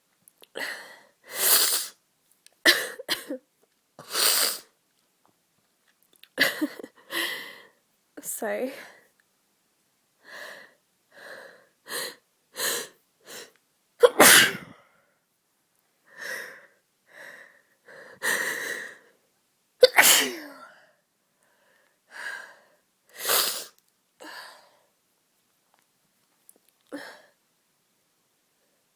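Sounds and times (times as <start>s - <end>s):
person sneezing: 14.0s - 14.8s, 19.8s - 20.5s, 23.2s - 23.8s.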